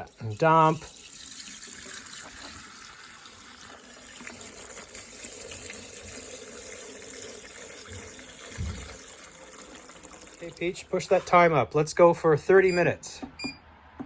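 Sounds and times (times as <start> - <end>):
liquid pouring into tank: 0.0 - 11.5.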